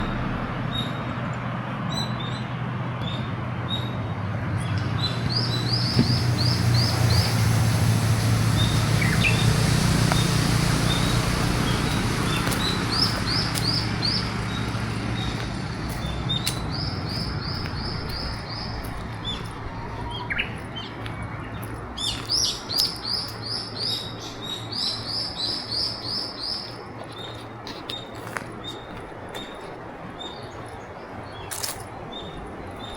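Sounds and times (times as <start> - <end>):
low steady rumble: 0.0 - 23.5
songbirds singing: 0.0 - 32.9.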